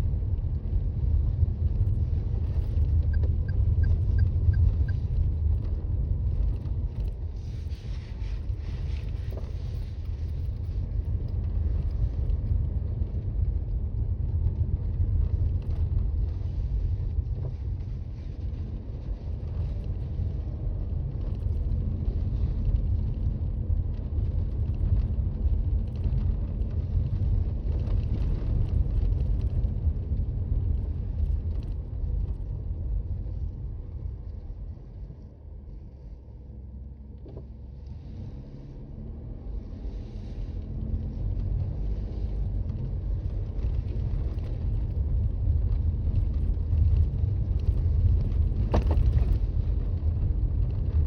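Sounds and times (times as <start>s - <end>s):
car engine running: 0.0s - 13.7s, 30.5s - 51.0s
road and tyre noise: 0.0s - 51.0s.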